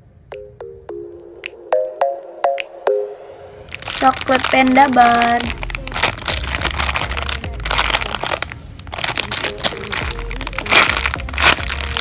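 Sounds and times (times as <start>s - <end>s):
plastic packaging crinkling: 3.7s - 12.0s.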